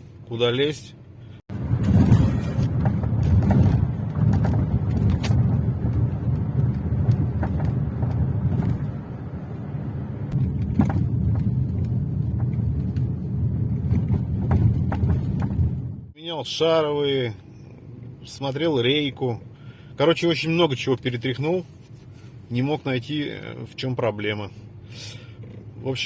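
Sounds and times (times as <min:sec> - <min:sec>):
road and tyre noise: 0:00.0 - 0:26.0
suspension knocks: 0:01.6 - 0:09.0, 0:10.3 - 0:16.0.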